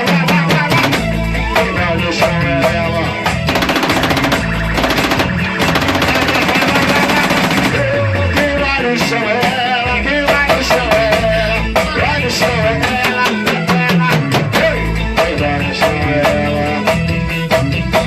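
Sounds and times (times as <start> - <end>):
bass line: 0.0 - 18.0
drum kit fast beat: 0.0 - 18.0
wavering melodic lead: 3.1 - 8.3.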